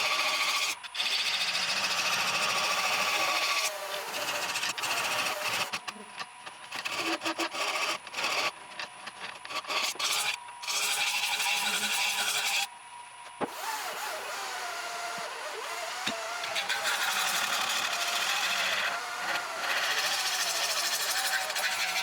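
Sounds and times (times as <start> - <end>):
lathe tool scraping wood: 0.0 - 12.7, 13.5 - 22.0
lathe whine: 0.0 - 22.0.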